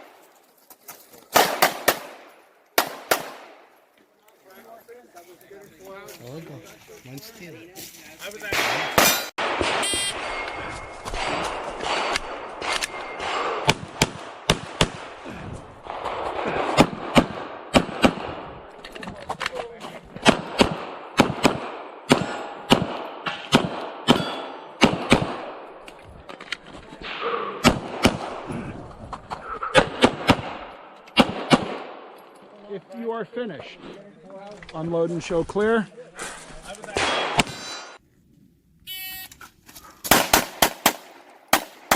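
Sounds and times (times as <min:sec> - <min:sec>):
pistol shots: 0:01.3 - 0:03.6, 0:08.5 - 0:10.5, 0:11.1 - 0:15.2, 0:15.9 - 0:18.5, 0:20.2 - 0:25.7, 0:27.0 - 0:28.5, 0:29.7 - 0:32.2, 0:40.1 - 0:41.9.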